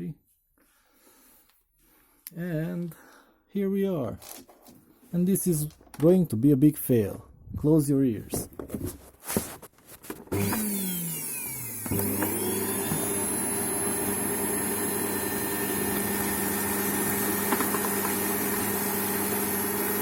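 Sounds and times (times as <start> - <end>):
vacuum cleaner motor humming: 10.2 - 20.0.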